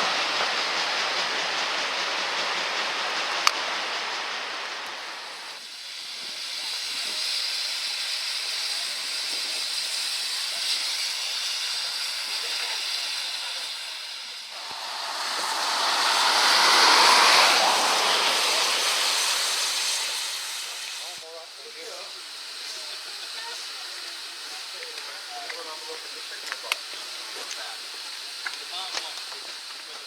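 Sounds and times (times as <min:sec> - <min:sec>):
steam locomotive hissing: 0:00.0 - 0:30.0.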